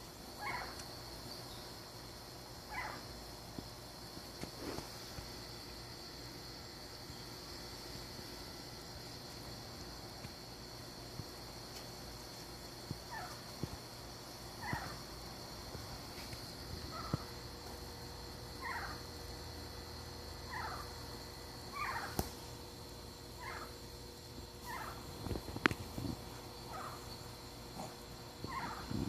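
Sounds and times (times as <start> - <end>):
squeaky downward-sliding animal calls: 18.6 - 19.0, 20.5 - 20.8, 21.7 - 22.2, 23.4 - 23.7, 24.6 - 25.0, 28.4 - 29.0.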